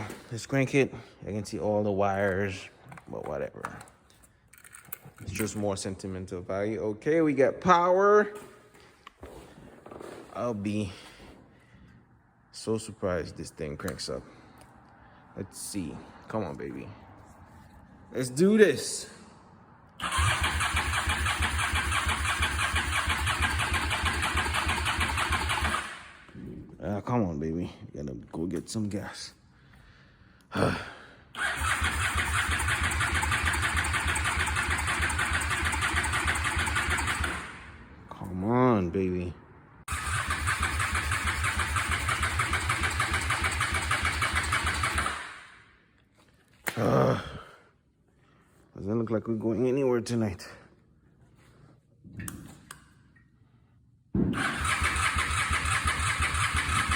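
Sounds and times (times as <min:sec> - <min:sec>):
electric starter cranking engine: 0:20.0 - 0:26.2, 0:31.4 - 0:37.7, 0:39.9 - 0:45.5, 0:54.4 - 0:56.9.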